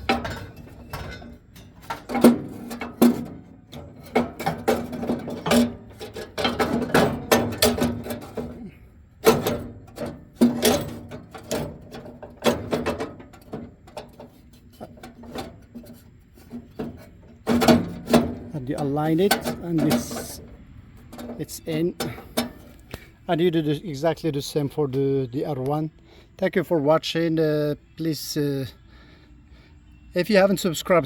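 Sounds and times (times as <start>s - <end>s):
cast iron burner clanking on metal: 0.0s - 23.8s.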